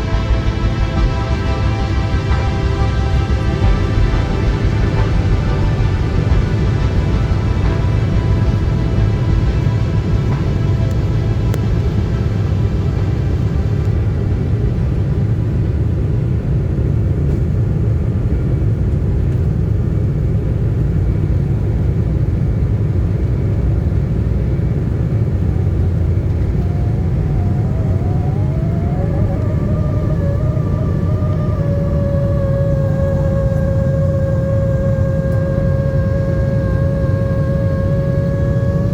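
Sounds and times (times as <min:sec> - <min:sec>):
wavering whine: 0:00.0 - 0:16.6, 0:24.4 - 0:38.9
jet engines rumbling: 0:00.0 - 0:38.9.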